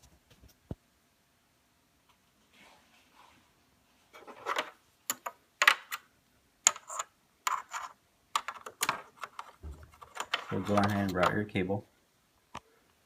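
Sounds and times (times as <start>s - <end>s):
faint rustling: 2.0s - 4.8s
hard plastic clicking and scraping: 6.7s - 11.4s.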